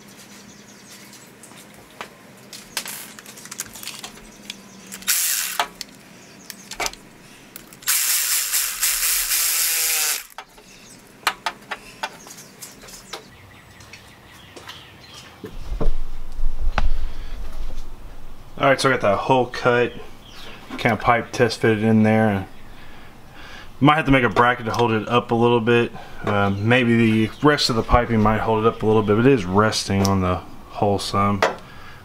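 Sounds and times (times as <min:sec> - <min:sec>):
hole saw drilling sheet metal: 0:05.0 - 0:05.8, 0:07.8 - 0:10.4
low rumble: 0:15.6 - 0:19.2.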